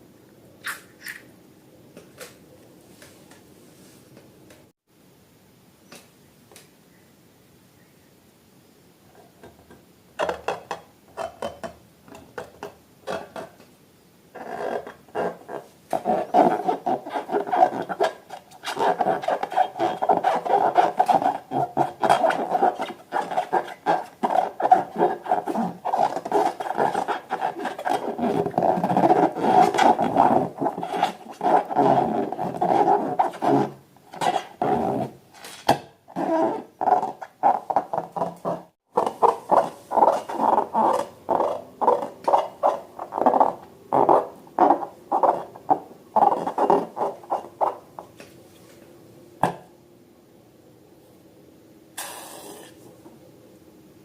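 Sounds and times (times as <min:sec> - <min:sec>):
rubber balloon squeaking: 0:14.4 - 0:35.2, 0:36.1 - 0:47.9.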